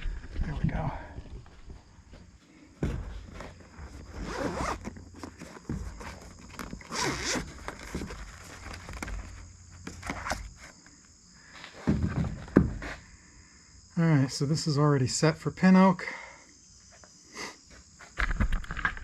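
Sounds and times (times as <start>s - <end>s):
zipper pulled: 4.1s - 5.0s, 6.8s - 7.9s.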